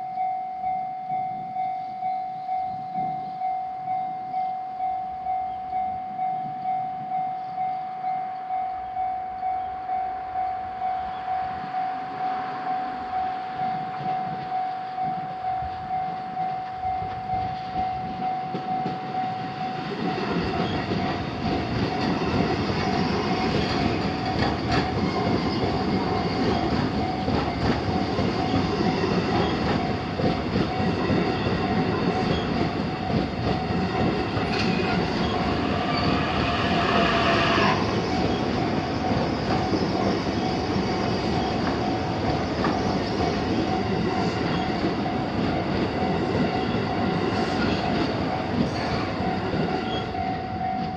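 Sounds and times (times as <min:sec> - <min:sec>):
level crossing warning bell: 0:00.0 - 0:50.9
train wheels rumbling on rails: 0:01.1 - 0:08.5, 0:09.7 - 0:50.9
rising squeal: 0:34.5 - 0:41.6.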